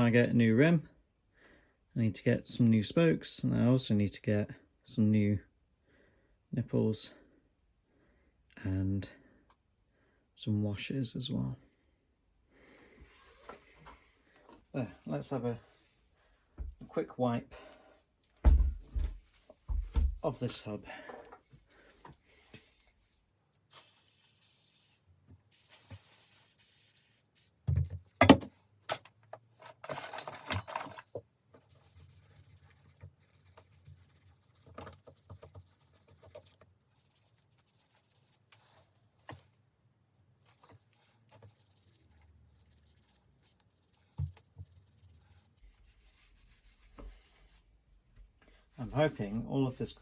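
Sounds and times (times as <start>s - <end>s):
rag wiping metal hub: 31.6s - 38.8s, 40.9s - 47.7s, 48.7s - 50.0s.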